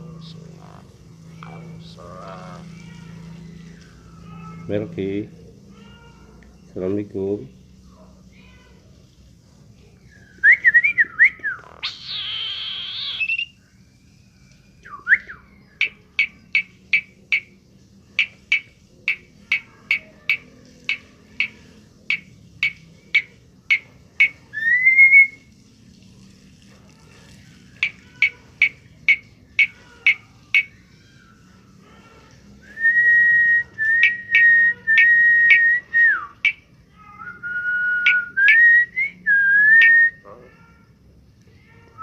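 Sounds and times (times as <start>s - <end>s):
pet bird whistling: 10.3s - 13.6s, 18.2s - 25.5s, 27.8s - 30.8s, 32.6s - 36.6s, 37.2s - 40.2s.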